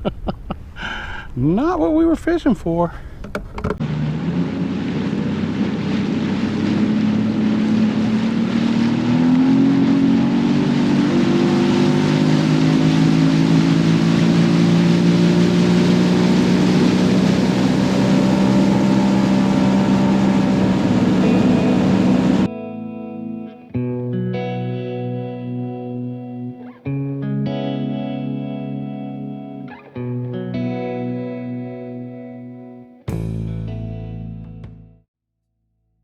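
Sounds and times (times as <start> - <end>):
outboard motor speeding up: 3.7 - 22.6
rush of wind and water: 3.8 - 22.5.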